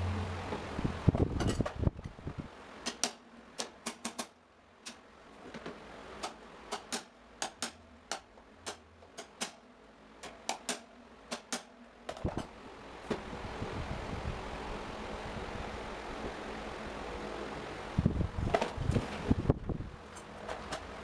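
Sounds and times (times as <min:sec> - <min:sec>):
sharp clicks and taps: 0:02.9 - 0:05.0, 0:06.2 - 0:09.6.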